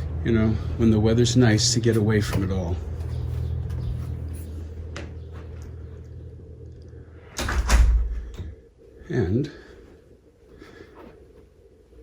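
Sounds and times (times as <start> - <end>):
low steady rumble: 0.0 - 10.5
door shutting with heavy thud: 7.4 - 8.5.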